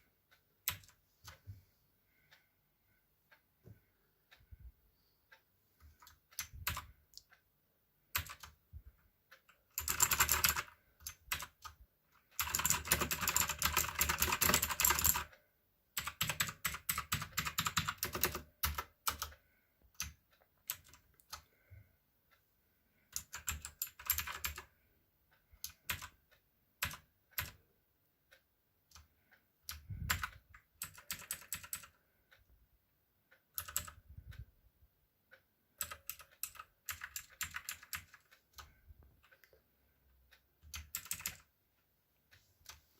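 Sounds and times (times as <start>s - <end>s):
mechanical keyboard typing: 0.6s - 1.4s, 5.9s - 7.3s, 8.1s - 8.6s, 9.4s - 15.4s, 16.0s - 21.5s, 23.1s - 24.7s, 25.6s - 26.2s, 26.8s - 27.6s, 28.9s - 32.0s, 33.5s - 34.1s, 35.8s - 39.5s, 40.6s - 41.6s.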